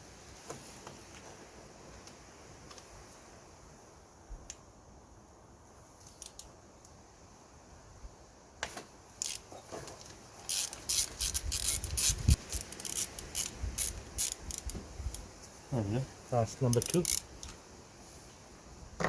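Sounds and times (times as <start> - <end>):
ratchet clicking: 9.2 - 9.4, 10.5 - 15.2, 16.7 - 17.6.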